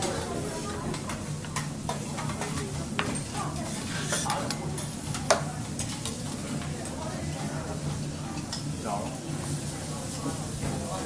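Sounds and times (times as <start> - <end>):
food sizzling on a griddle: 7.5 - 11.0.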